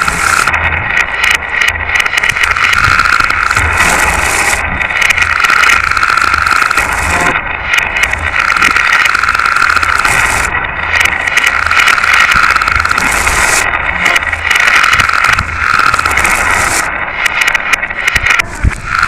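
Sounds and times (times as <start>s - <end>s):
marbles rattling on plastic track: 0.0s - 19.0s.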